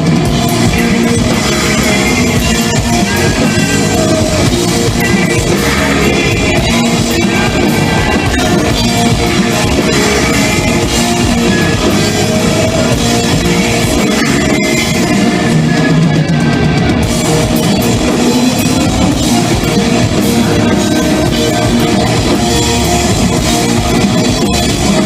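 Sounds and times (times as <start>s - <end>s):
distorted electric guitars: 0.0s - 25.0s
live rock band: 0.0s - 25.0s.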